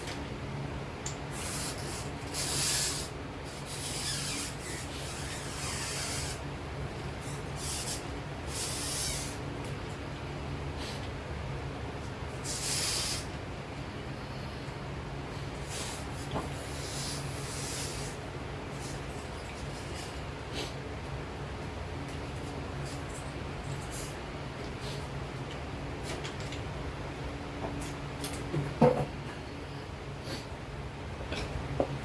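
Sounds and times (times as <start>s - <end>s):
steady low hum: 0.0s - 32.0s.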